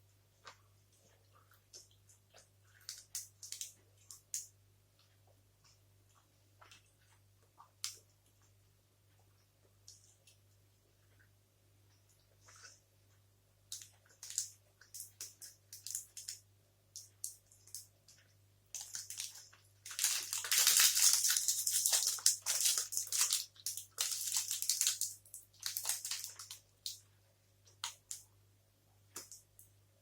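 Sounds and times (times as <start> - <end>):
close chewing and crunching: 18.8 - 27.0.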